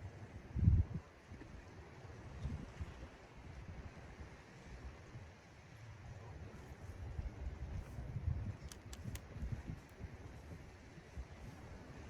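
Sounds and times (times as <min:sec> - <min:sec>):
short clicks: 0:08.6 - 0:09.2.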